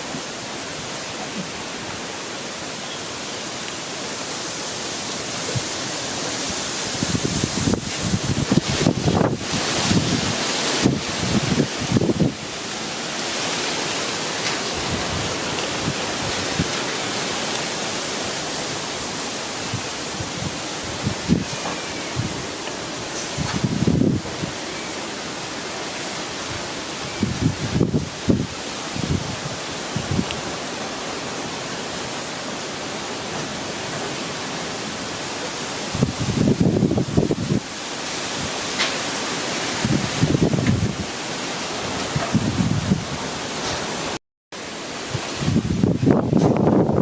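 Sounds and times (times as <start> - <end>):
rain: 0.0 - 47.0
strong wind rushing: 6.4 - 24.7, 26.4 - 30.6, 35.8 - 38.7, 39.4 - 44.2, 45.0 - 47.0.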